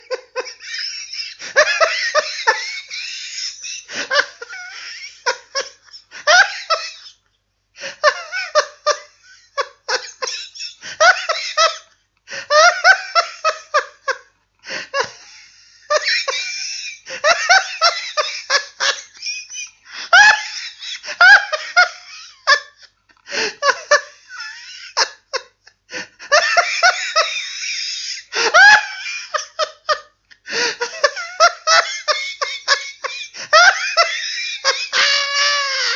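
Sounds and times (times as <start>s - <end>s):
person laughing heartily: 0.0s - 35.9s.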